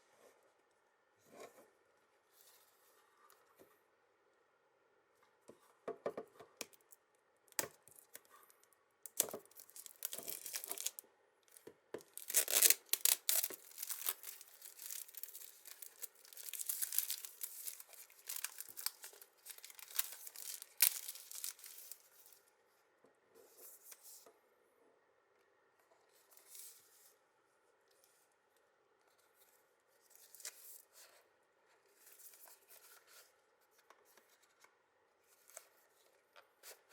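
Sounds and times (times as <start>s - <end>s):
packaging clicks: 9.1s - 11.0s, 12.0s - 22.0s
packaging tearing and crinkling: 9.1s - 11.0s, 12.0s - 22.4s.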